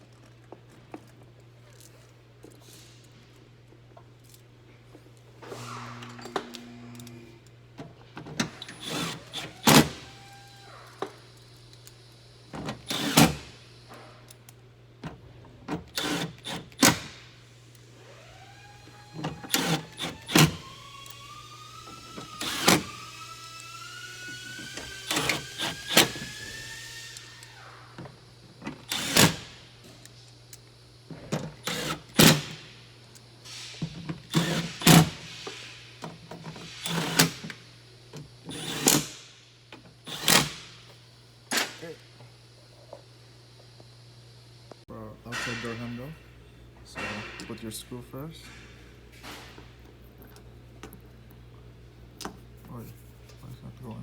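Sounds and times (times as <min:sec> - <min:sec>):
small electric motor whining: 0:18.0 - 0:28.2.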